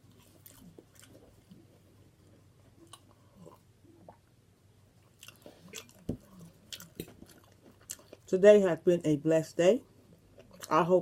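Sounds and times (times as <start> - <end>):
faint chewing: 0.0 - 8.3, 10.0 - 10.9.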